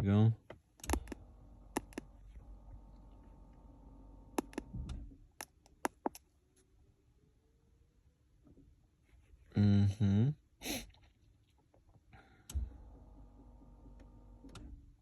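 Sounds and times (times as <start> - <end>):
sharp clicks: 0.8 - 2.1, 4.4 - 4.7.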